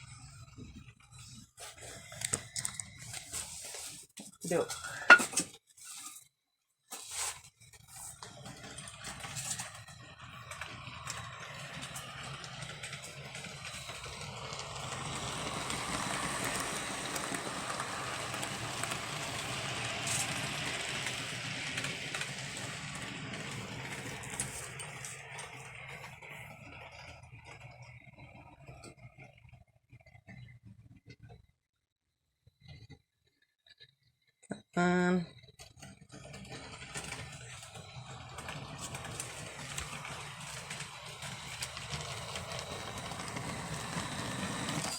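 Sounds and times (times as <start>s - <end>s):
model train running: 8.0s - 29.7s, 34.8s - 44.9s.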